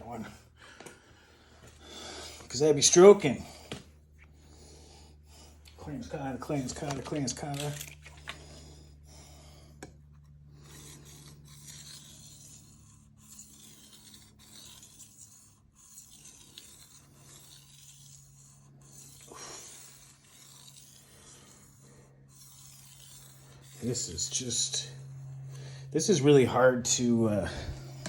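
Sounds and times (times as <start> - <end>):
steady low hum: 0.0 - 28.0
knife scraping on whetstone: 9.8 - 28.0.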